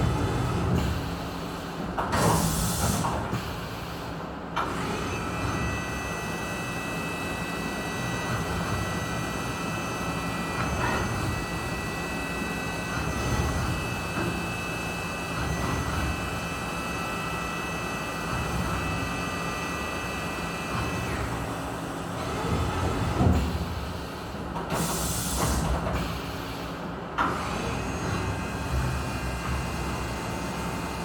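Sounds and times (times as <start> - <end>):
machine spindle whine: 4.7 - 23.2.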